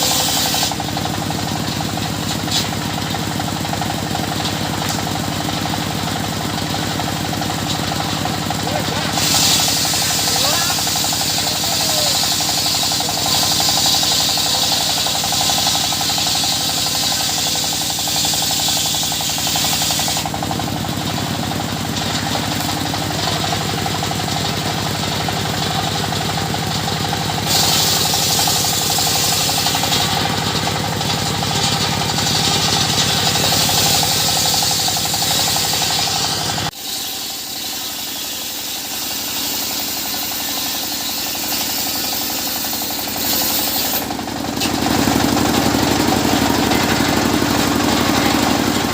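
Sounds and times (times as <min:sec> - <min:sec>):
circular saw running: 0:00.0 - 0:48.9.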